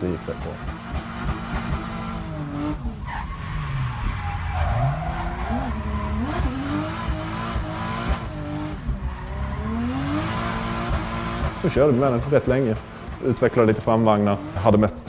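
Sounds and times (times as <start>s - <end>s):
car engine revving: 0.0s - 15.0s
tyres squealing: 2.8s - 7.7s.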